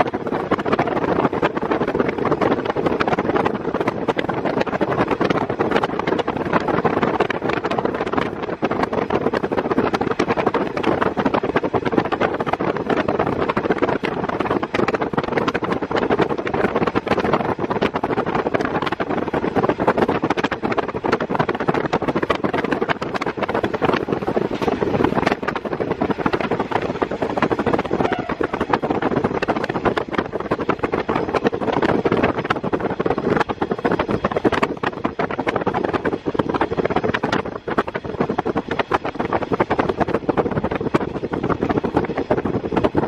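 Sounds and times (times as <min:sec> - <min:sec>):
diesel railcar engine and wheels: 0:00.0 - 0:43.0
wind noise: 0:00.0 - 0:43.0.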